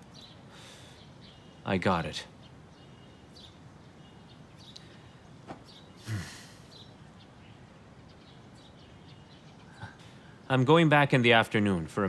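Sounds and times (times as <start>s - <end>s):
small birds chirping: 0.0s - 12.0s
breathy sigh: 6.0s - 6.7s.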